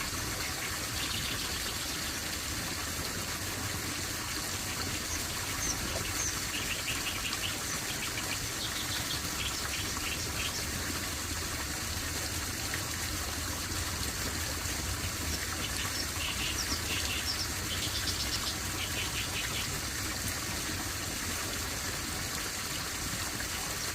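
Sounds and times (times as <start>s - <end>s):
flowing water: 0.0s - 23.9s
small birds chirping: 5.0s - 10.7s, 15.4s - 19.7s.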